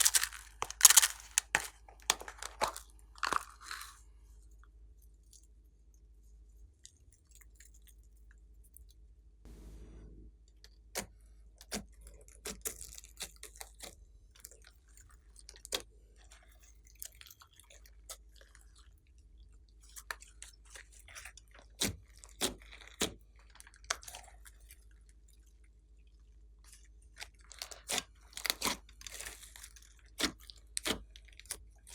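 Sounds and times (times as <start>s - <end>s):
slime squishing: 0.0s - 4.0s.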